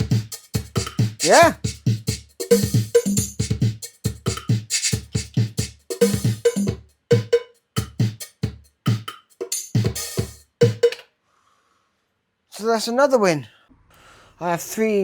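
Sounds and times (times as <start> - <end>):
drum machine beat: 0.0 - 11.0.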